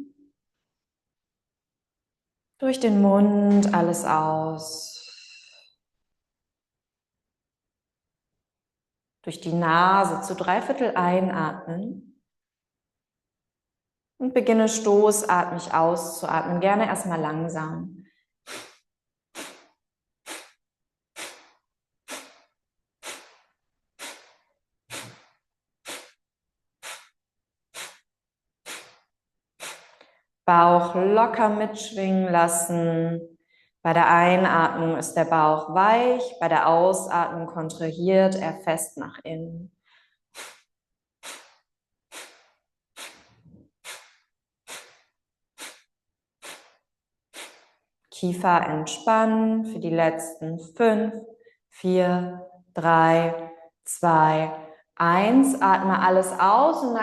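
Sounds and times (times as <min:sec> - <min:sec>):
forceful nasal exhalations: 0:18.1 - 0:30.4, 0:39.8 - 0:48.0.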